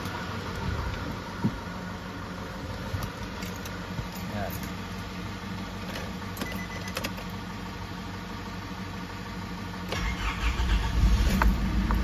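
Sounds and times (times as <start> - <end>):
steady low hum: 0.0 - 12.0
diesel engine cranking and starting: 5.7 - 12.0.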